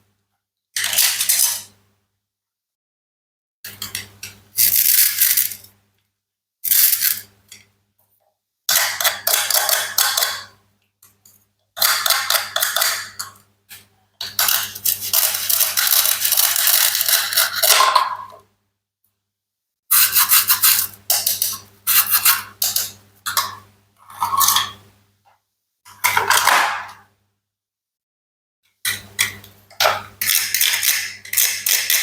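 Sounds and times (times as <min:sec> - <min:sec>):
toy knife cutting toy food: 0:19.9 - 0:22.8, 0:30.2 - 0:32.0.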